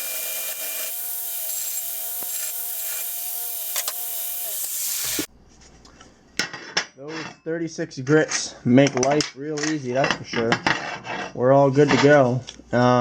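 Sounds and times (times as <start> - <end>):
belt grinder grinding steel: 0.0 - 5.3.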